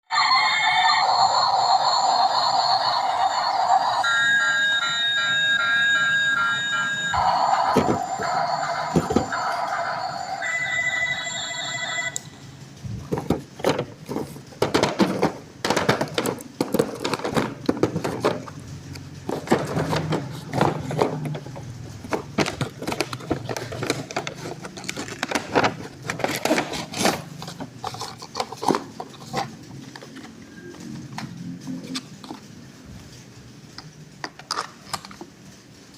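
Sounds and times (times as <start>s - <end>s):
electronic toy tune: 0.1s - 12.4s
plastic toys clicking and tapping: 13.1s - 31.3s, 33.8s - 35.4s
packaging rustling: 19.3s - 30.3s.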